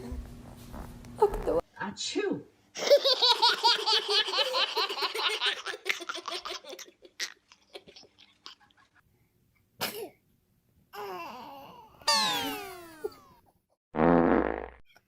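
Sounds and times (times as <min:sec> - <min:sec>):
baby sneezing: 0:09.8 - 0:10.2.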